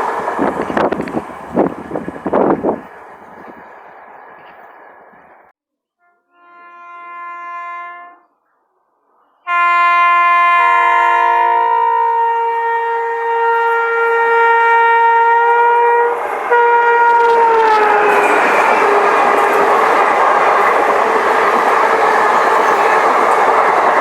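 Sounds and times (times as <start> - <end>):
train rushing past: 0.0 - 5.5, 10.0 - 24.0
locomotive air horn: 6.0 - 8.3, 9.5 - 19.4.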